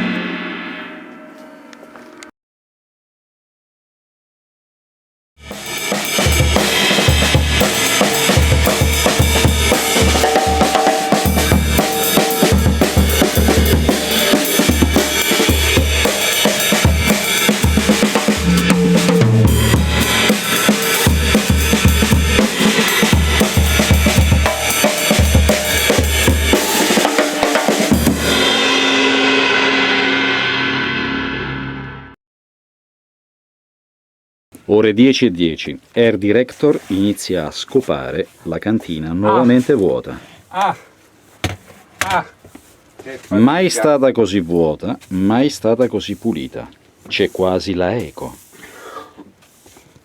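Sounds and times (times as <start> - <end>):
drum kit playing: 0.0 - 2.2, 5.4 - 30.9
cymbal wash: 0.0 - 2.3, 5.5 - 32.1.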